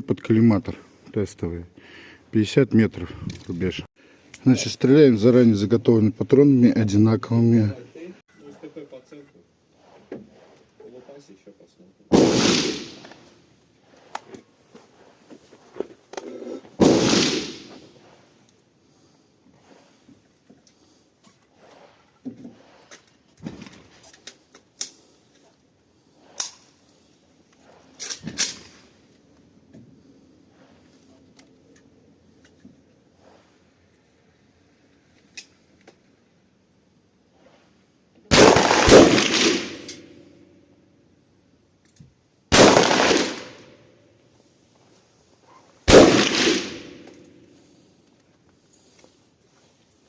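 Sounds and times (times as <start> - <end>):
shotgun shots echoing: 12.1 - 13.3, 16.8 - 18.0, 38.3 - 40.2, 42.5 - 43.8, 45.9 - 47.2.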